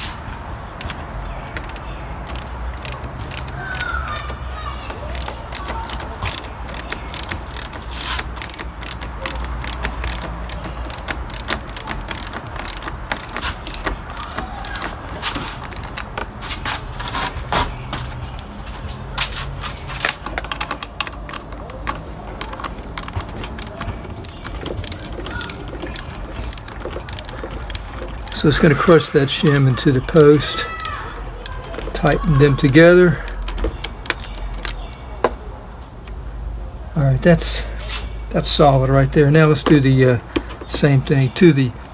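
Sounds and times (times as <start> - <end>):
socket ratchet clicking: 0.9 - 16.2, 20.1 - 35.1.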